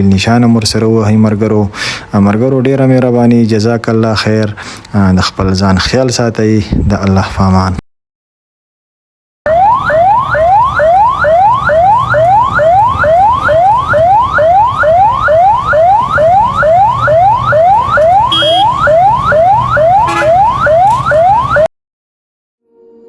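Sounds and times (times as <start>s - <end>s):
electronic siren rising sweeps: 9.5s - 21.7s.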